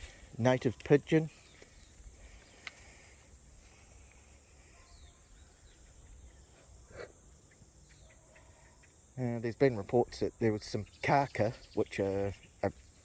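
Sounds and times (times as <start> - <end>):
insects chirring: 0.0 - 13.0
faint bird chirps: 4.2 - 9.4.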